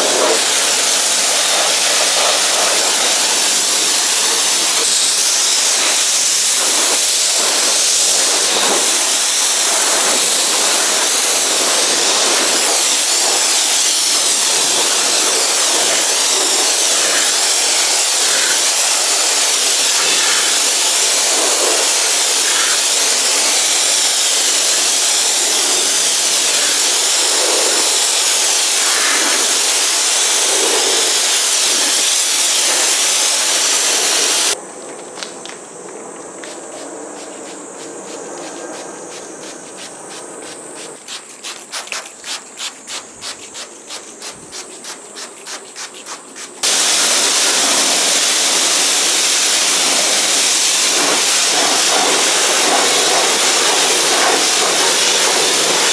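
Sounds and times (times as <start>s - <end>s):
hand scrubbing on paint: 0.0s - 23.6s, 36.4s - 48.6s, 49.8s - 55.9s
pressure washer spraying: 0.0s - 34.6s, 36.5s - 55.9s.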